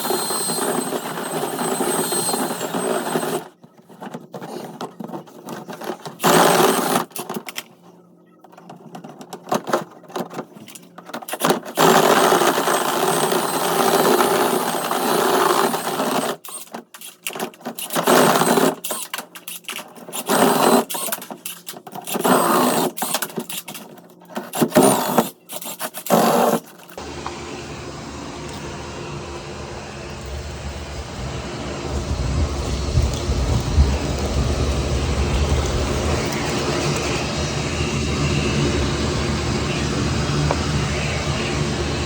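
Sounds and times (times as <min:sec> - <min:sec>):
small motor running: 0:00.0 - 0:03.5, 0:24.5 - 0:42.0
low rumble: 0:27.0 - 0:42.0.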